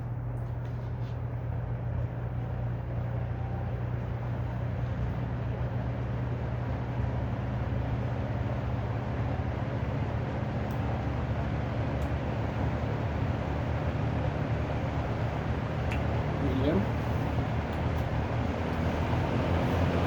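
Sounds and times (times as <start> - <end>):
box fan motor hum: 0.0 - 20.0
rushing air from fan: 9.9 - 20.0.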